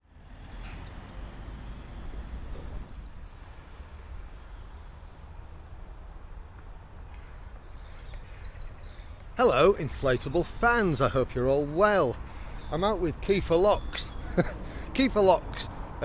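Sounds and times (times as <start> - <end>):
songbird chirping: 0.0 - 16.0
steady low rumble: 9.4 - 16.0.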